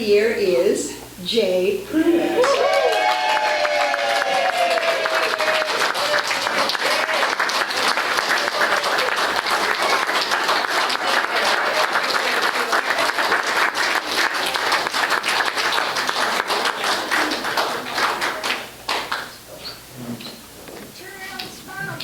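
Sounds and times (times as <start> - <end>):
audience applauding: 2.4 - 19.4.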